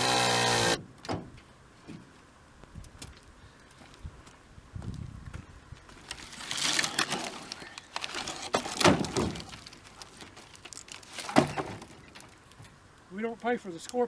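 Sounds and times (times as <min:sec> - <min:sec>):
wood scraping: 0:05.9 - 0:12.8
wooden boards knocking and clattering: 0:08.5 - 0:09.6, 0:11.2 - 0:12.4.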